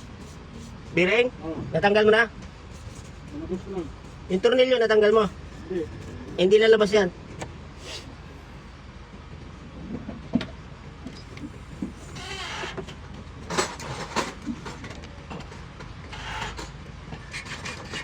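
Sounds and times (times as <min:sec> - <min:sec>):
steady low hum: 0:00.0 - 0:09.8.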